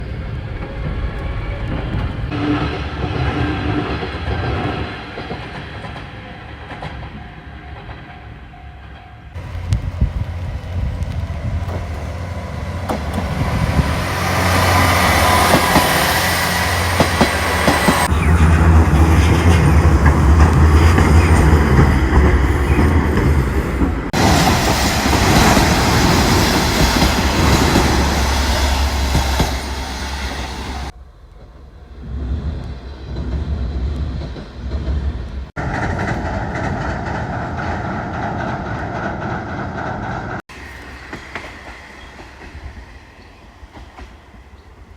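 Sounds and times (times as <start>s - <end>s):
trains running on tracks: 0.0s - 44.9s
wheels clattering over rail joints: 9.4s - 42.7s.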